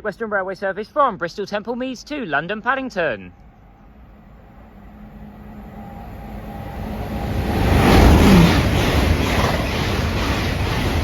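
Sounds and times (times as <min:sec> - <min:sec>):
train passing at speed: 0:02.8 - 0:11.0.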